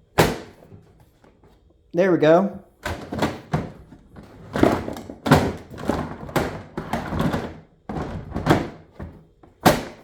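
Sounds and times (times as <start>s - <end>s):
plastic crate clattering: 2.8s - 10.0s.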